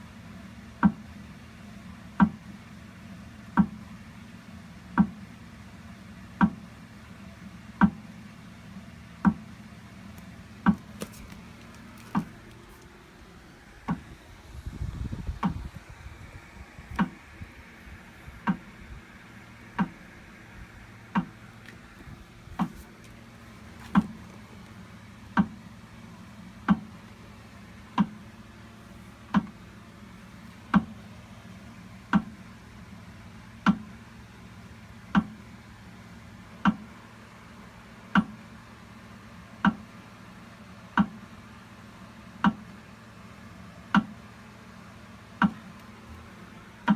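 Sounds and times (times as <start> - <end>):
steady low hum: 0.0 - 46.9
low rumble: 10.4 - 25.8.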